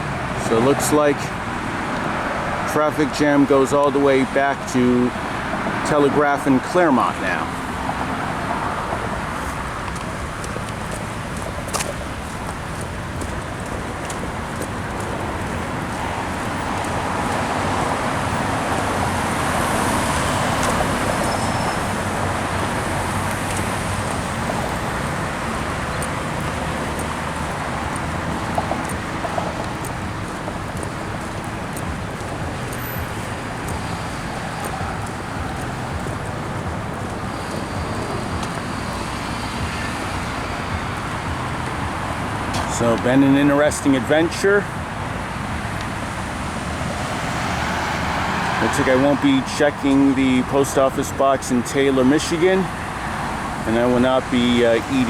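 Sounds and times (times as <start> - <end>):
road traffic: 0.0 - 55.0
vehicle passing: 0.0 - 55.0.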